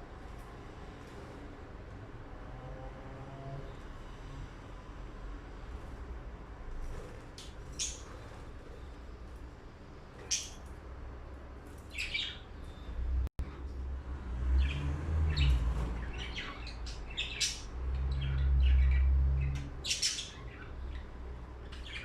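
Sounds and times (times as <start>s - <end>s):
lovebirds chirping: 7.7s - 8.3s, 10.2s - 10.6s, 11.9s - 13.0s, 14.6s - 22.0s.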